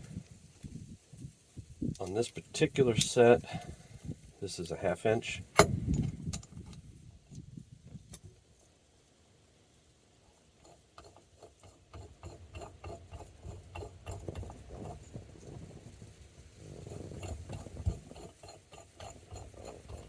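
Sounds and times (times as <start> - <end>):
small metallic clicks: 5.5 - 7.5
tools rubbing: 10.4 - 15.2, 16.7 - 20.0.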